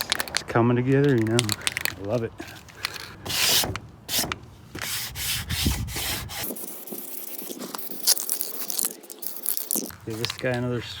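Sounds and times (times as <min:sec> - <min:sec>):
spray can hissing: 0:06.0 - 0:09.9.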